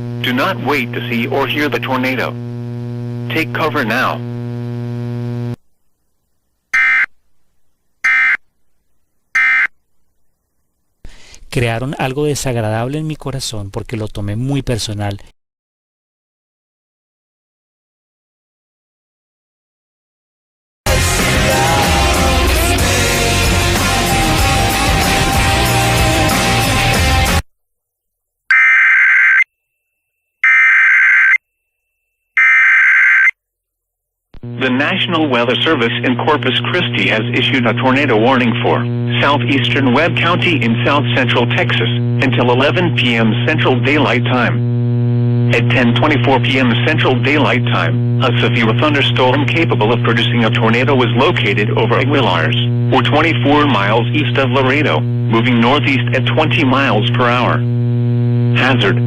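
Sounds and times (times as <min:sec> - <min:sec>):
radio music: 0:00.0 - 0:05.6, 0:20.9 - 0:27.4, 0:34.4 - 0:59.0
shrill buzzing digital tone: 0:09.4 - 0:09.7.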